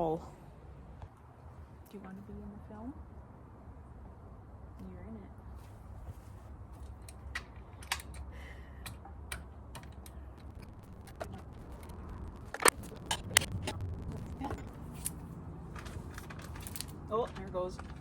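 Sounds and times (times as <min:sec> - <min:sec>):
steady low hum: 0:00.0 - 0:18.0
metal clicks and clinks: 0:15.8 - 0:18.0.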